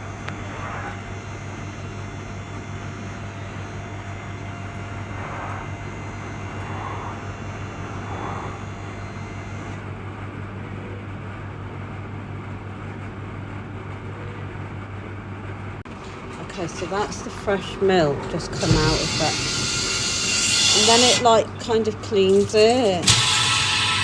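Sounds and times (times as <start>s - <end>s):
vending machine humming: 0.0s - 24.0s
high hiss: 18.6s - 21.2s.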